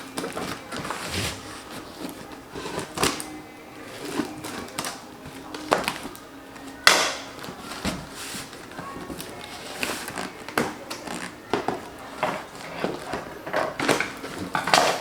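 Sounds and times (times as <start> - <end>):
cardboard box scrapes and rustles: 0.0 - 3.2, 7.5 - 14.7.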